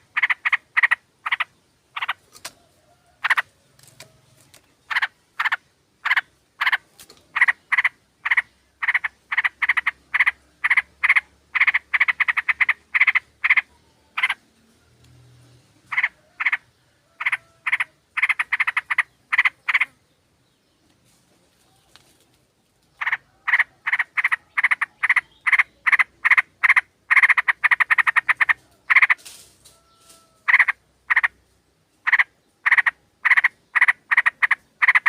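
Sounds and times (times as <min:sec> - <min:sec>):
bulbuls calling harsh chatters: 0:23.0 - 0:29.4.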